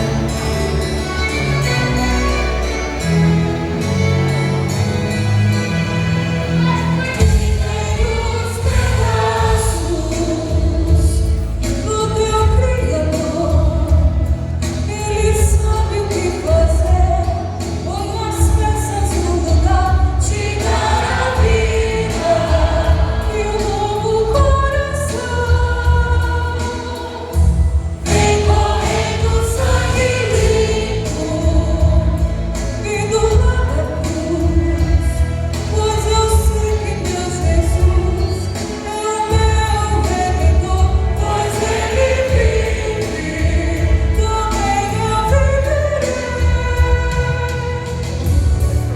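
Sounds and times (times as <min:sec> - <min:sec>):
vocal group singing in harmony: 0:06.6 - 0:11.6, 0:19.6 - 0:33.2, 0:40.0 - 0:47.4.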